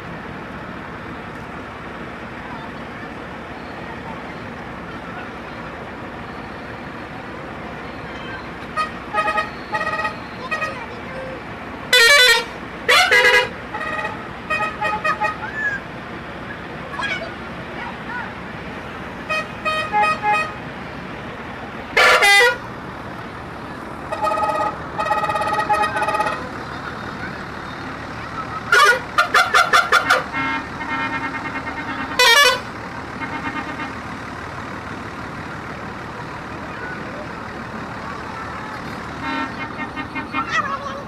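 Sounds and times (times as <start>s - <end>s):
bus horns playing tunes: 6.3s - 15.7s, 19.1s - 20.9s, 21.8s - 41.0s.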